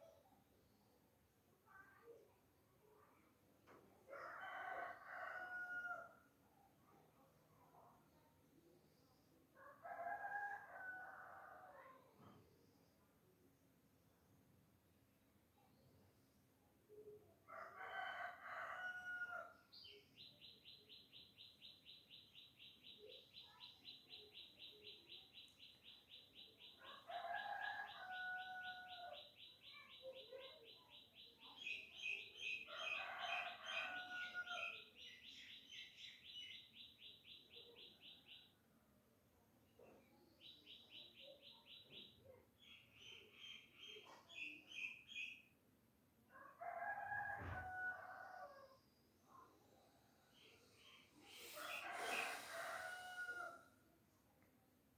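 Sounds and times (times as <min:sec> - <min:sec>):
rooster crowing: 0:17.7 - 0:19.5, 0:27.1 - 0:29.1, 0:32.7 - 0:34.8, 0:46.6 - 0:48.6, 0:51.3 - 0:53.7.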